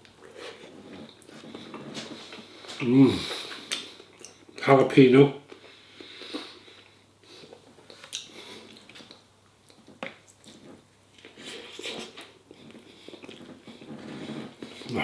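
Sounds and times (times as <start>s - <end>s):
person chewing food: 5.5s - 15.0s.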